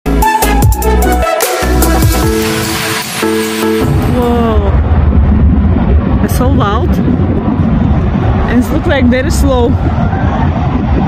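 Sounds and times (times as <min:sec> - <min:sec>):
electronic music with heavy bass: 0:00.1 - 0:05.1.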